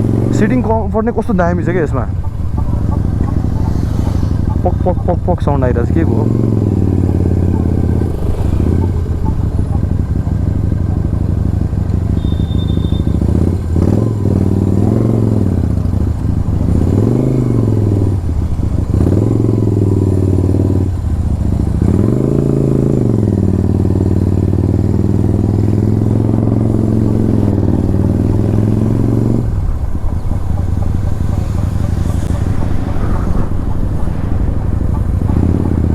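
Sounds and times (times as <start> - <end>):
motorcycle engine revving: 0.0 - 35.9.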